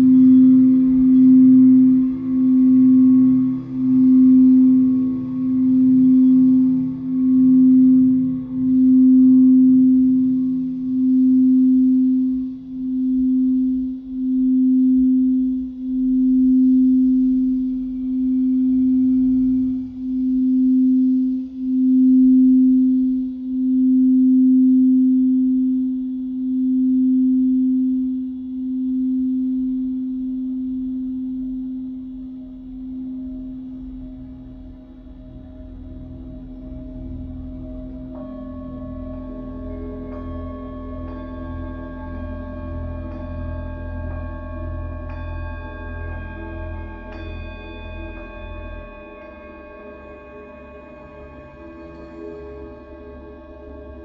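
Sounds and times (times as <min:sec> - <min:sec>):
singing bowl ringing low tone: 0:00.0 - 0:54.0.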